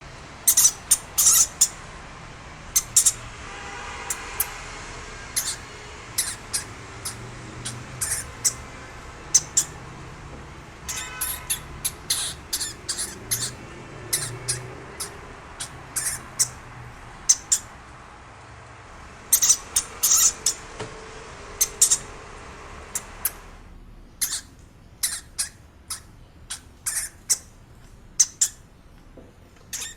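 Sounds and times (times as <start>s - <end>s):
hamster squeaking: 0.4s - 1.9s, 2.7s - 3.2s, 5.3s - 9.9s, 10.8s - 16.6s, 17.2s - 17.8s, 19.3s - 20.8s, 21.5s - 22.3s, 22.9s - 28.7s, 29.6s - 29.9s.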